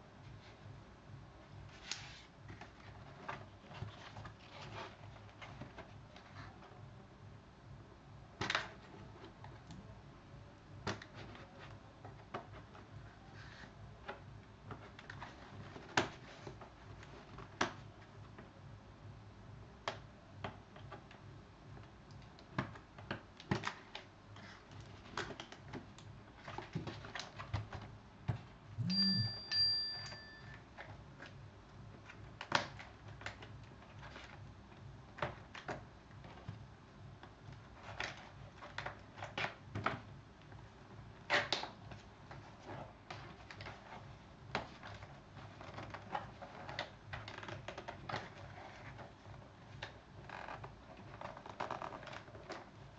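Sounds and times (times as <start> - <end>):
steady high tone: 28.8 - 30.6.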